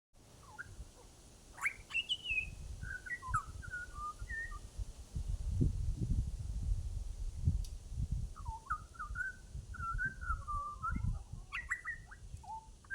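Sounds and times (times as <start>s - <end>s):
bird singing whistled notes: 0.4s - 0.8s, 1.6s - 4.7s, 8.4s - 12.9s
low wind rumble on microphone: 2.3s - 12.9s.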